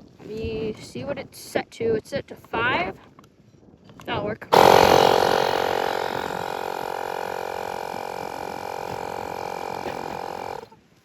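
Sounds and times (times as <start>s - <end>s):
electric air compressor running: 4.5s - 10.7s.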